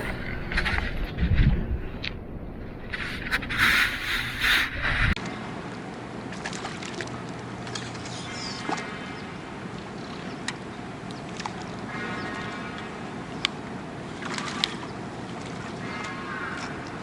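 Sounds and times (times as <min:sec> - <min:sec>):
faint hum: 0:00.0 - 0:17.0.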